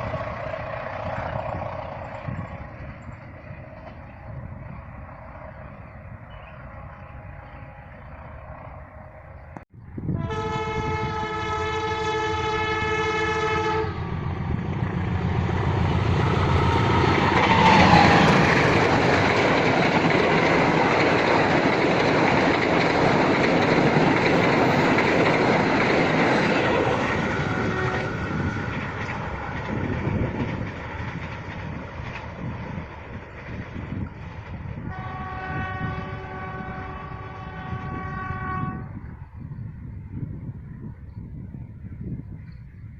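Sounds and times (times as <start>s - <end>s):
train wheels passing: 0.0s - 42.9s
train horn blast: 6.3s - 8.8s, 10.1s - 14.4s, 16.4s - 18.4s, 26.6s - 28.7s, 34.8s - 39.1s.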